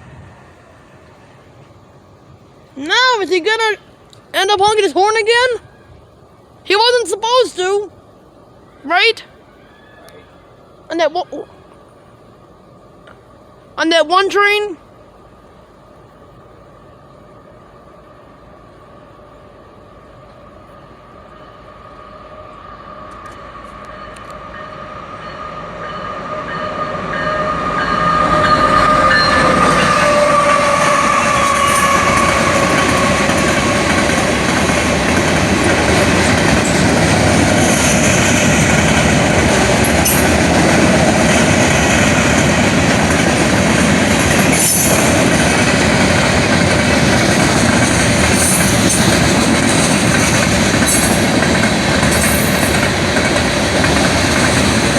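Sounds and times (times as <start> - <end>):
steady train tone: 0.0 - 54.9
train passing: 0.0 - 54.9
train wheels rumbling and clattering: 22.5 - 54.9.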